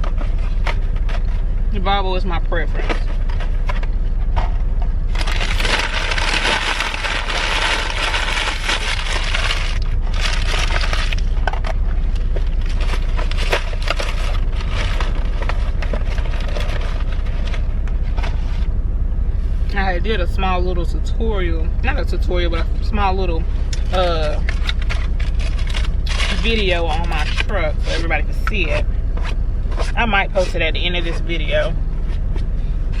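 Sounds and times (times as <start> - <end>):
truck diesel engine idling: 0.0 - 33.0
wrapping being crumpled: 5.1 - 18.5, 23.9 - 30.5.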